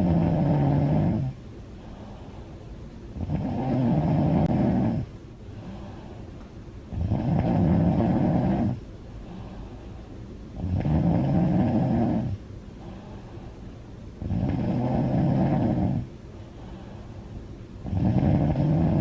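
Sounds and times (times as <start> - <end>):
woman snoring loudly: 0.0 - 1.4, 3.2 - 5.1, 6.9 - 8.8, 10.6 - 12.4, 14.2 - 16.0, 17.8 - 19.0
quiet breathing: 0.0 - 19.0.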